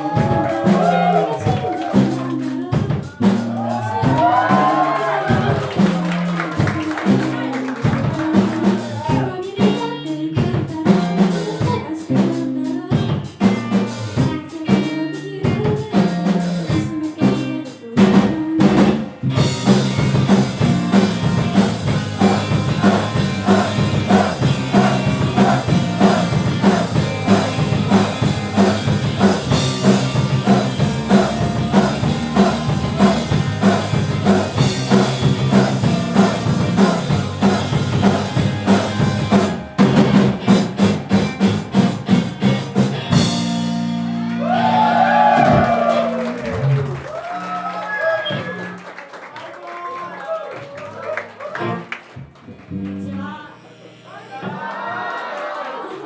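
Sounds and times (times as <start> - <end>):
rock band playing live: 0.0 - 47.4, 51.5 - 53.1
drum kit hits: 18.0 - 44.0.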